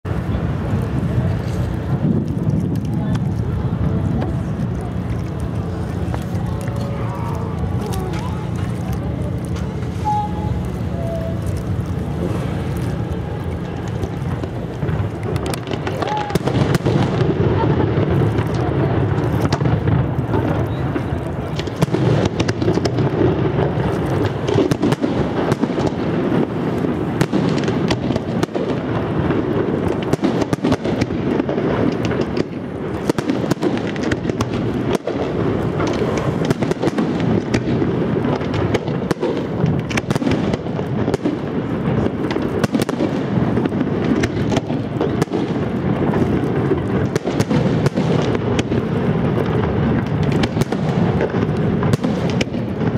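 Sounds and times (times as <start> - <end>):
low rumble: 0.0 - 30.0
fireworks bangs and crackling: 0.0 - 52.9.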